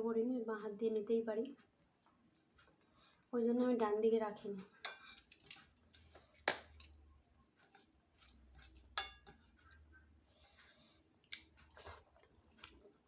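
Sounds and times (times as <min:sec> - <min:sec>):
tableware clink: 0:09.0 - 0:09.4.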